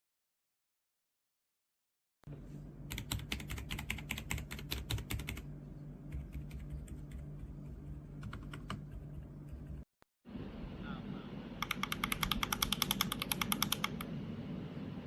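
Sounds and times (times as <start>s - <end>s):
steady low hum: 2.3s - 15.0s
mechanical keyboard typing: 2.9s - 5.4s, 6.1s - 9.8s, 11.6s - 14.1s.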